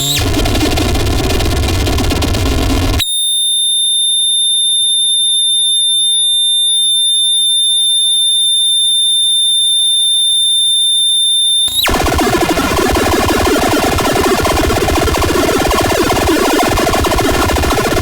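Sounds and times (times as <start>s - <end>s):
dense distorted noise: 0.0s - 3.0s, 11.7s - 18.0s
piercing high-pitched electronic tone: 0.0s - 3.6s, 11.7s - 18.0s
faint warbling sounds: 11.7s - 18.0s.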